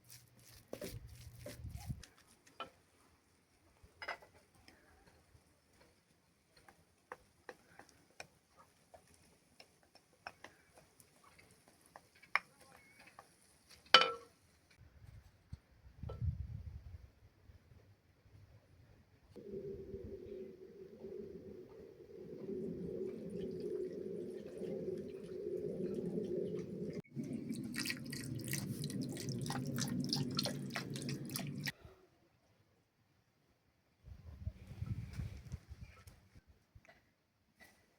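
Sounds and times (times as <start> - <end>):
thick stew bubbling and popping: 5.2 - 13.9, 22.6 - 31.8.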